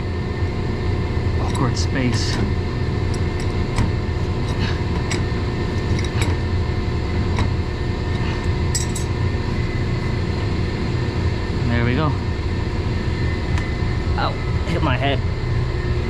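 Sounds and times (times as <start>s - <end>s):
low hum of equipment: 0.0s - 16.0s
light metallic clinks and taps: 8.7s - 9.2s.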